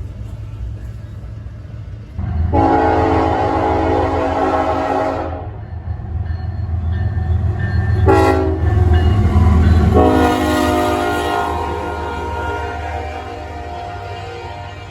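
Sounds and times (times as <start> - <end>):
low rumble of train: 0.0 - 14.9
locomotive horn blasts: 2.2 - 5.6, 8.0 - 8.8, 9.8 - 14.9.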